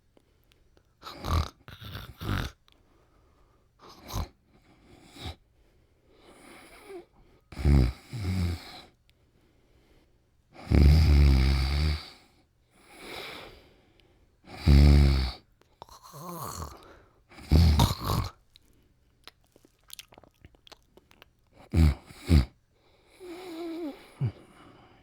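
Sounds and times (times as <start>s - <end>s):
man snoring: 1.0s - 2.6s, 7.6s - 8.7s, 10.6s - 12.2s, 14.5s - 18.4s, 21.7s - 22.5s, 23.2s - 24.6s
short snorts: 1.0s - 2.6s, 14.6s - 18.4s, 21.6s - 22.6s.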